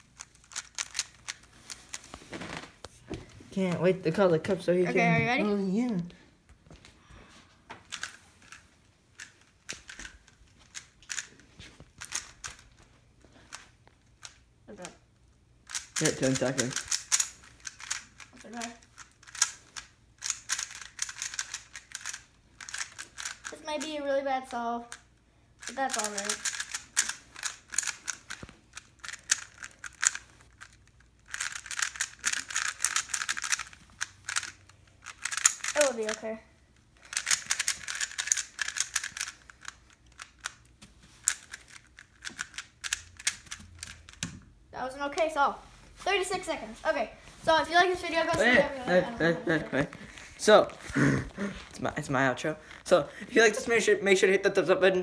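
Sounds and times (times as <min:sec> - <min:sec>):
speed cube clicking twists: 0:00.0 - 0:02.1, 0:07.9 - 0:12.7, 0:13.5 - 0:15.0, 0:15.6 - 0:36.2, 0:37.0 - 0:44.4.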